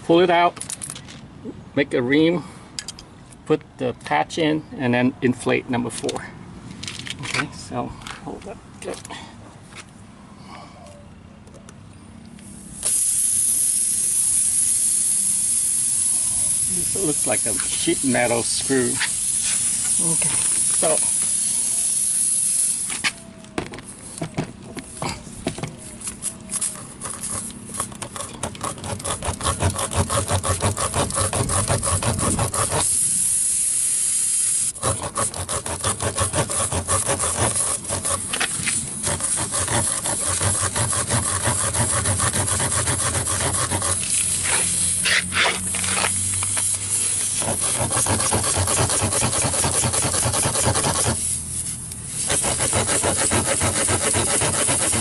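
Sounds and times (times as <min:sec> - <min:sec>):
air hissing from tire: 0:12.4 - 0:24.2, 0:24.8 - 0:35.6, 0:36.2 - 0:55.0
reaming tool scraping in tire: 0:12.7 - 0:23.2, 0:25.7 - 0:34.0, 0:34.6 - 0:55.0.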